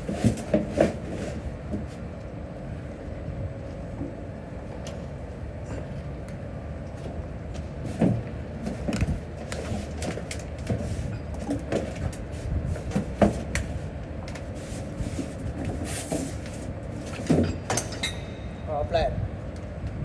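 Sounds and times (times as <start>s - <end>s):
knocks and clanks of repair work: 16.1s - 18.7s.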